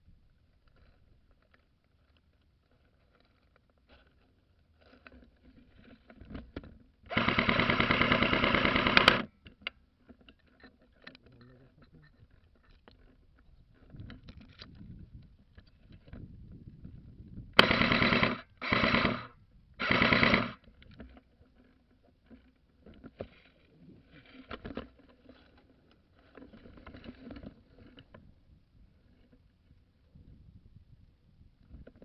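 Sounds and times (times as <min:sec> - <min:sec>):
quiet rustling: 0:00.3 - 0:07.0, 0:09.4 - 0:17.2, 0:20.6 - 0:30.4
airsoft gun full-auto fire: 0:07.1 - 0:09.3, 0:17.6 - 0:20.6.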